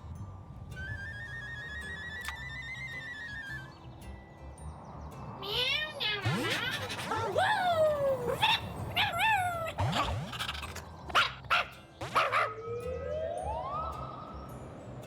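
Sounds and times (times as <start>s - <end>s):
rising whistle-like glide: 0.8s - 3.8s
cartoon character yips and squeaks: 5.6s - 12.6s.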